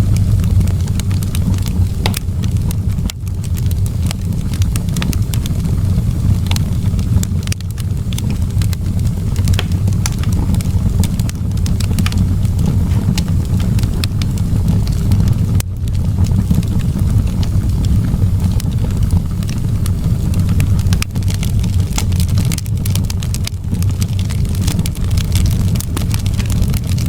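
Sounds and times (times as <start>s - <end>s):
wood fire crackling: 0.0s - 27.0s
low rumble: 8.4s - 22.4s.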